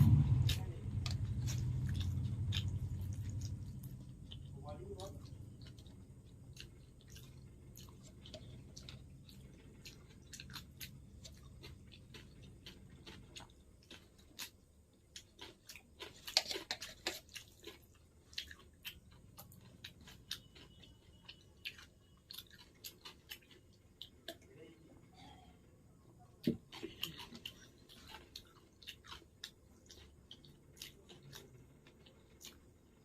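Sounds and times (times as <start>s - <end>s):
chewing and crunching food: 0.0s - 25.5s, 26.2s - 33.0s.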